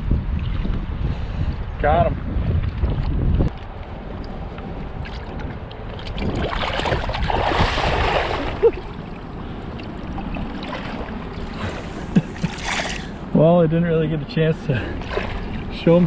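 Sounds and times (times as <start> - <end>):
wind rumbling on microphone: 0.0 - 14.1
river water: 2.6 - 16.0
water splashing: 4.2 - 13.3, 14.8 - 16.0.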